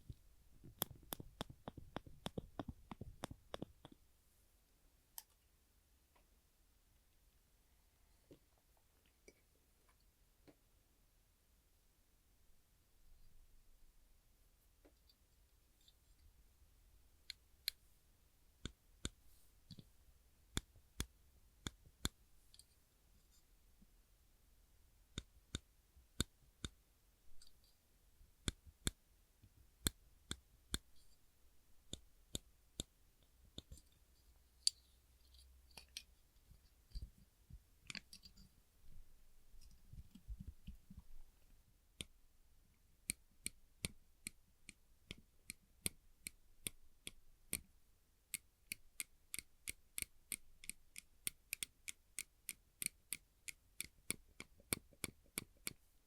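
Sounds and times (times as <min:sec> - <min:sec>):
soft handling noises: 0:33.5 - 0:41.6.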